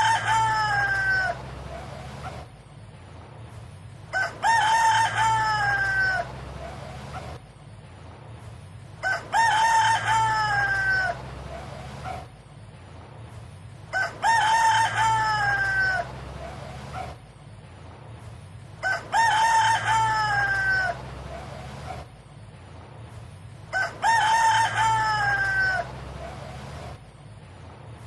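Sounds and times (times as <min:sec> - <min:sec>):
rooster crowing: 0:00.0 - 0:02.4, 0:04.1 - 0:07.4, 0:09.0 - 0:12.3, 0:13.9 - 0:17.2, 0:18.8 - 0:22.1, 0:23.7 - 0:27.0.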